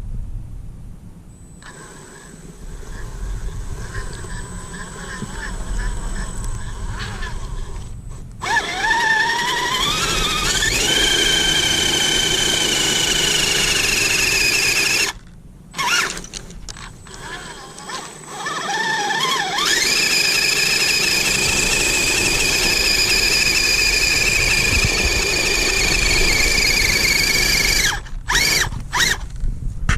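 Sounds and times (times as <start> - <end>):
electric motor whining: 1.6 - 15.2, 15.8 - 29.3
low rumble with faint ticks: 6.1 - 8.4.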